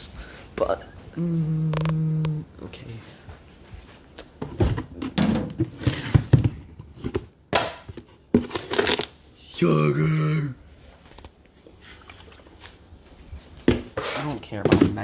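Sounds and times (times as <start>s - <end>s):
objects knocking and clunking: 4.2s - 9.0s, 13.6s - 15.0s.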